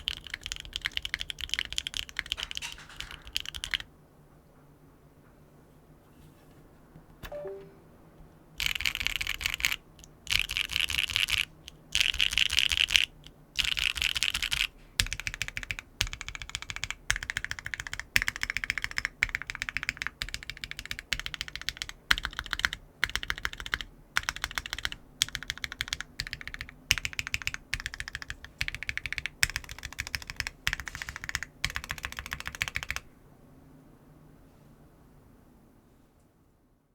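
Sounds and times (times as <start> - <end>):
typing on mechanical keyboard: 0.0 - 3.9, 8.6 - 33.1.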